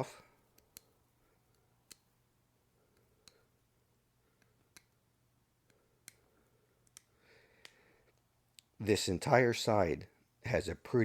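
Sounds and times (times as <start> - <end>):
fingernail clicking on knife edge: 4.4 - 5.0.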